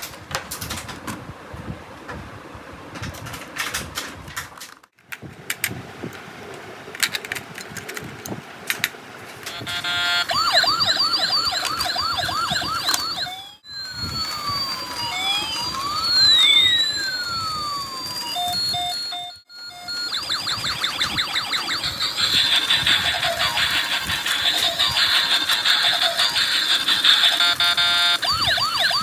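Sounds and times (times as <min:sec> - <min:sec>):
handling clicks: 0:03.2 - 0:09.8
toy electronic siren: 0:09.4 - 0:29.0.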